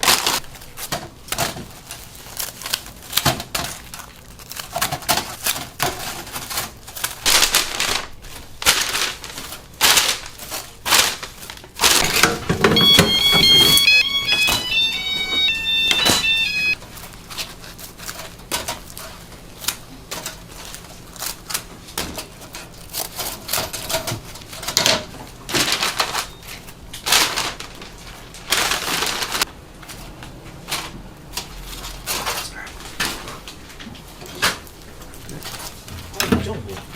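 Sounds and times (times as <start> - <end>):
short electronic melody: 12.8 - 16.8.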